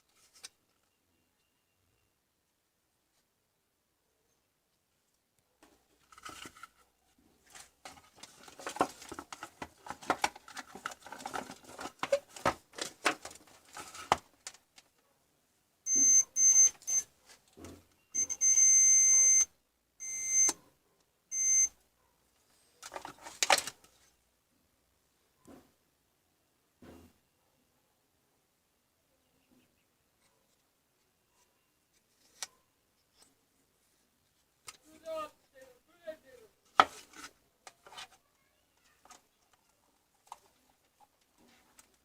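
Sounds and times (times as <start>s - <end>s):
electronic beeper: 15.9s - 17.0s, 18.2s - 19.4s, 20.0s - 20.5s.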